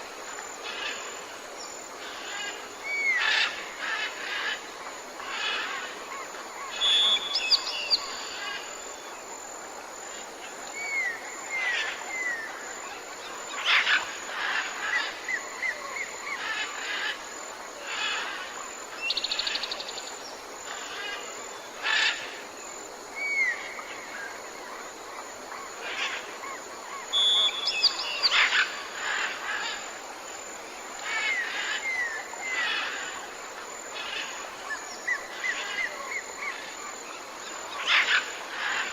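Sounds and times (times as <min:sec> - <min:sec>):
steady background hiss: 0:00.0 - 0:38.9
birds chirping and whistling: 0:27.2 - 0:28.1.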